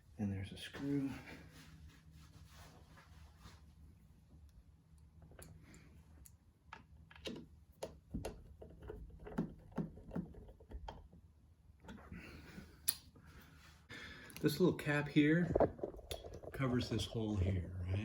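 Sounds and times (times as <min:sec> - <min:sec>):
hand tool tapping screw and plastic: 0:06.8 - 0:11.2.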